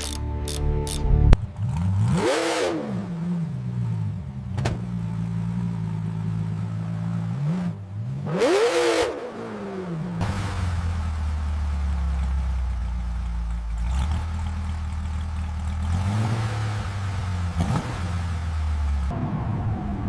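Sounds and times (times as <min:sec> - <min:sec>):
sharp click: 0:00.0 - 0:01.4
car engine revving: 0:00.0 - 0:20.0.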